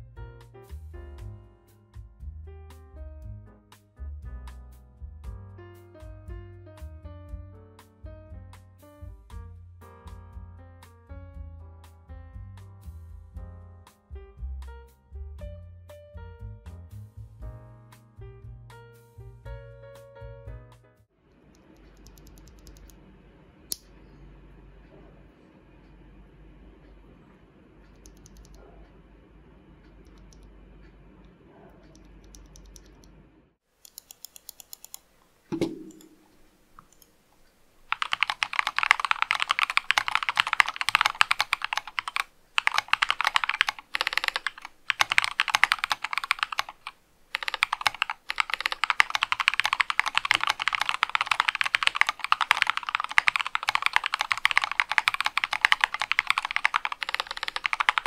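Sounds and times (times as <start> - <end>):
typing on mechanical keyboard: 21.6 - 23.0, 28.0 - 28.6, 31.9 - 33.1, 33.8 - 35.0, 37.9 - 58.0.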